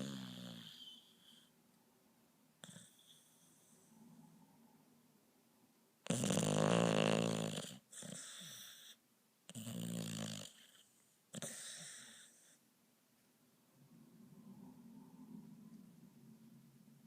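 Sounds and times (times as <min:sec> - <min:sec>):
person snoring: 0:00.0 - 0:01.0, 0:06.1 - 0:08.6.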